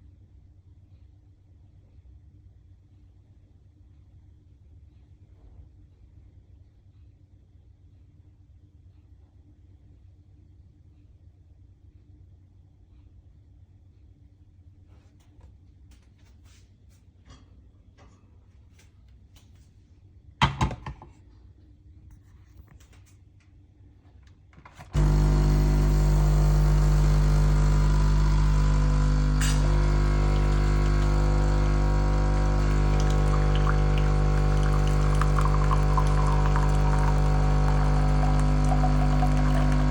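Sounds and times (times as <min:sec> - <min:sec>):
coffee machine pump humming: 0:24.9 - 0:39.9
coffee machine clunk: 0:27.8 - 0:39.9.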